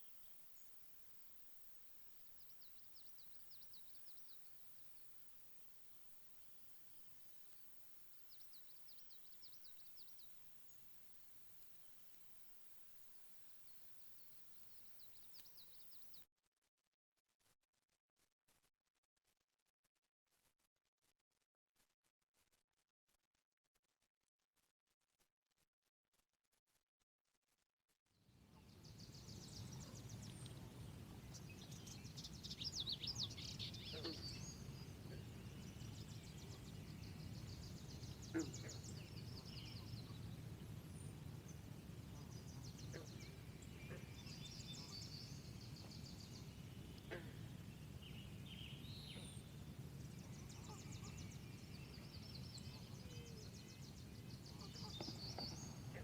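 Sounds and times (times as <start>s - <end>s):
small birds trilling and chirping: 0.0s - 16.2s, 28.4s - 56.0s.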